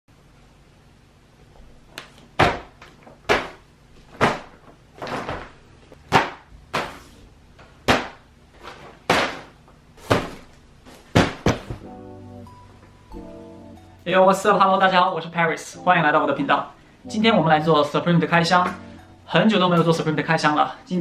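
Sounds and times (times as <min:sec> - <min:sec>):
sharp thuds or slams: 0:02.4 - 0:03.6, 0:11.1 - 0:11.9.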